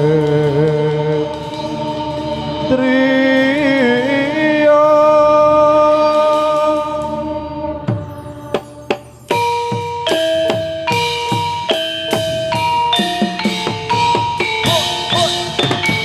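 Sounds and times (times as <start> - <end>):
steady drone: 0.0 - 4.8
sharp drum strikes: 8.6 - 16.0
voice chanting long notes: 14.6 - 15.8.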